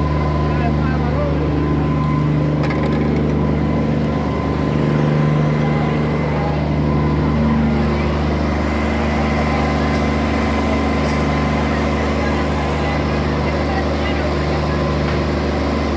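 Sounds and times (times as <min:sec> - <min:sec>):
vehicle engine idling: 0:00.0 - 0:15.9.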